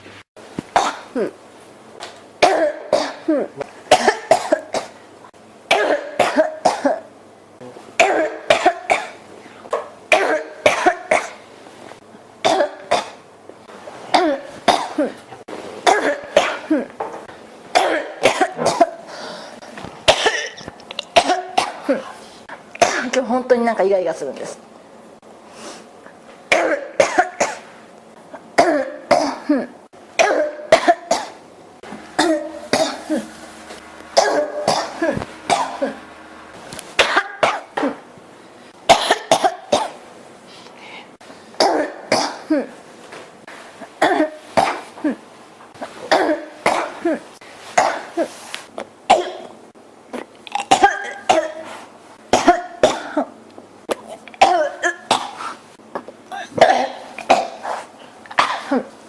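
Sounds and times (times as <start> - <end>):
person coughing: 0.7 - 1.4, 2.4 - 5.0, 5.7 - 7.1, 7.7 - 9.2, 10.1 - 11.4, 12.4 - 13.2, 14.1 - 17.0, 17.7 - 19.2, 20.0 - 22.2, 22.8 - 23.2, 26.5 - 27.7, 28.4 - 38.0, 38.9 - 40.0, 41.6 - 42.8, 43.8 - 45.2, 45.8 - 48.4, 49.1 - 49.6, 50.7 - 51.7, 52.3 - 53.4, 54.0 - 58.9.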